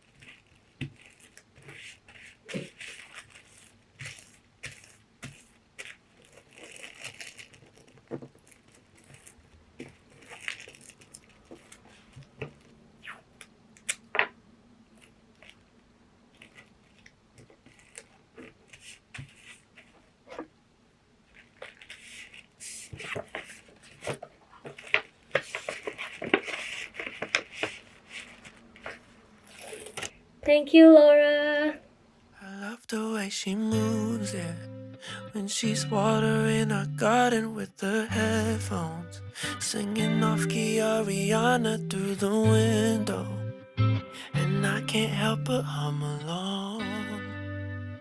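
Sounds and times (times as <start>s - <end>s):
paper packaging crinkling: 0.0s - 12.7s, 21.3s - 30.2s.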